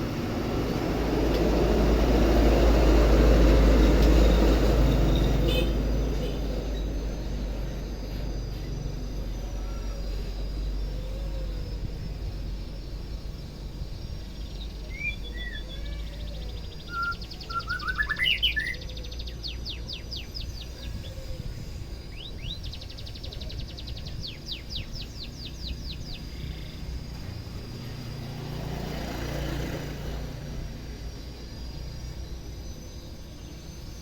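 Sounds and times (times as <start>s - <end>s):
bird singing whistles and trills: 4.9s - 27.0s.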